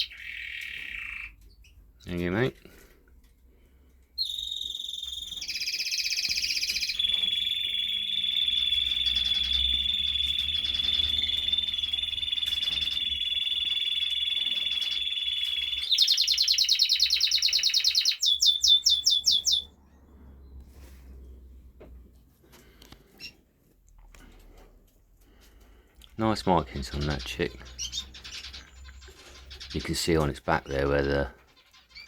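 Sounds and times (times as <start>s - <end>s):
canary singing trills: 0.0s - 1.8s, 4.2s - 19.8s, 26.2s - 32.0s.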